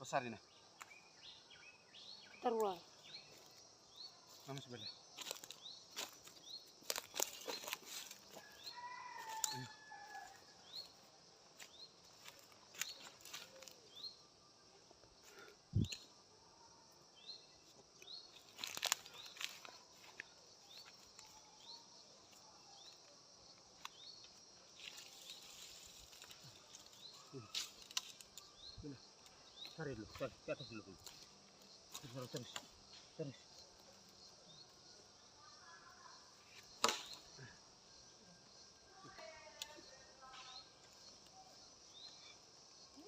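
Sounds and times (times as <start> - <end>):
twigs snapping and crackling: 5.2 - 8.4, 12.2 - 13.8, 18.4 - 21.4, 24.8 - 28.4, 36.8 - 37.3.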